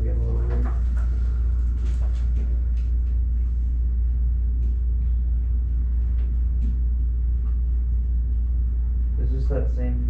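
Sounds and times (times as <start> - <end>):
low rumble: 0.0 - 10.0.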